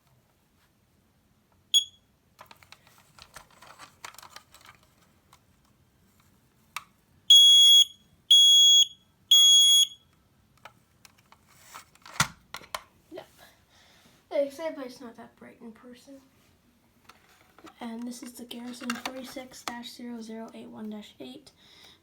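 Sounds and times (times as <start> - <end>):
smoke alarm beeps: 1.7 - 2.1, 7.3 - 10.1.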